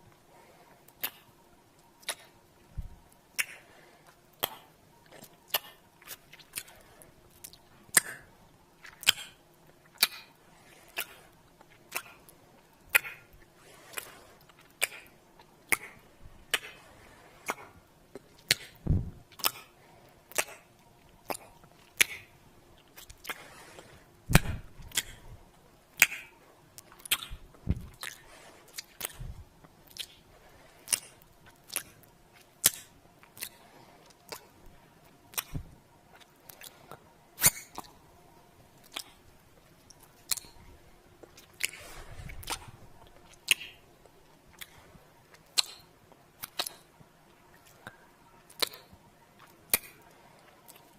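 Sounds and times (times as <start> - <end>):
wet lip smacks: 1.0 - 1.3, 8.8 - 10.3, 11.8 - 12.2, 13.9 - 15.1, 18.4 - 19.7, 20.3 - 20.7, 21.3 - 22.3, 26.0 - 29.2, 29.9 - 30.2, 30.9 - 33.6, 35.3 - 36.7, 38.8 - 39.2, 39.9 - 40.6, 41.3 - 43.8, 45.4 - 46.8, 47.6 - 50.0.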